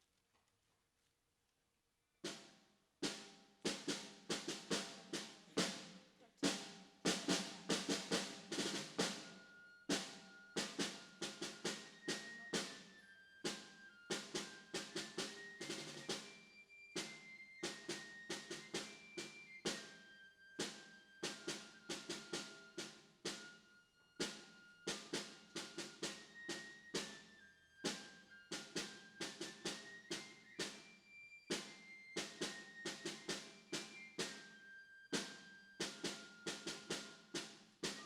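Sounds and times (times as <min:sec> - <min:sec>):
drum strikes: 0:03.0 - 0:09.3.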